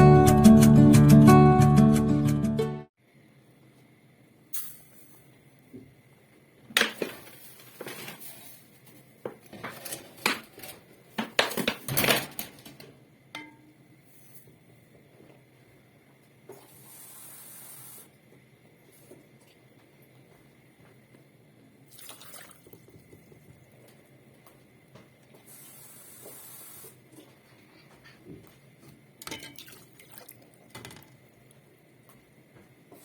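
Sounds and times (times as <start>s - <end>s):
pots and utensils clattering: 6.8s - 8.6s, 9.4s - 13.7s, 29.2s - 29.8s, 30.7s - 31.2s
short steady hiss: 25.4s - 27.0s.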